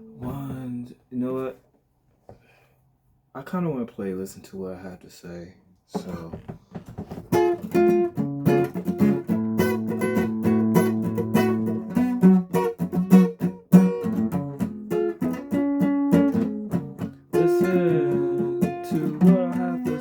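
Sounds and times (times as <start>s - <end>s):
acoustic guitar strumming chords: 7.3s - 20.0s.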